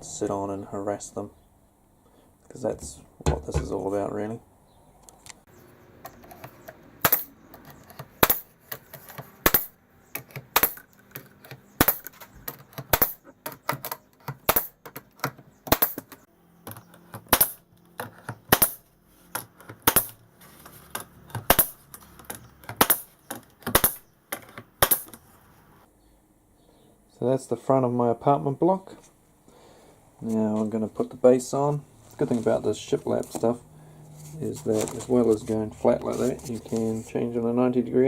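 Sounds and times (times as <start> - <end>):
hammer driving nails into wood: 6.3 - 20.2, 20.9 - 25.2.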